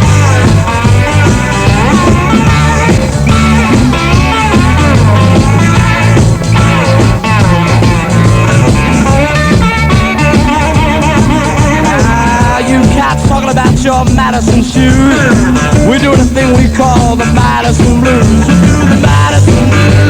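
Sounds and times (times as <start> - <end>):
blues-rock music: 0.0 - 20.0
electric guitar lead: 0.0 - 20.0.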